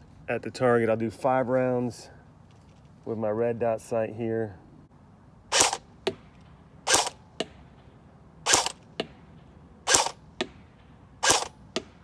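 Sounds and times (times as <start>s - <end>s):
airsoft rifle shots: 5.5s - 7.9s, 8.5s - 12.0s.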